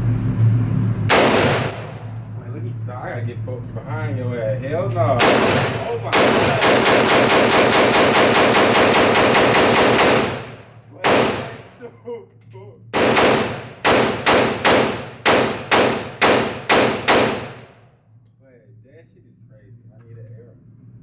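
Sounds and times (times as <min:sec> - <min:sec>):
rapid gunfire: 0:01.1 - 0:02.0, 0:05.2 - 0:11.7, 0:13.0 - 0:17.8.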